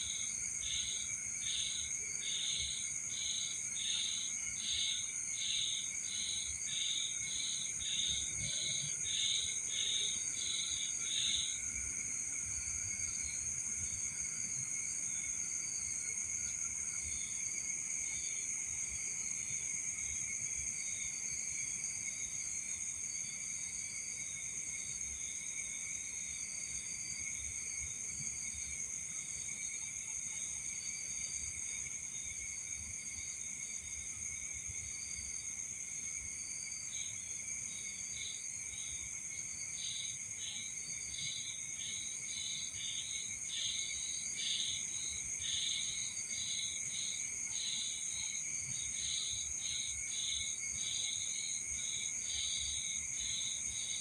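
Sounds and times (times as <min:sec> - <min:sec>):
insect rapid chirps: 0:00.0 - 0:54.0
crickets trilling: 0:24.4 - 0:54.0.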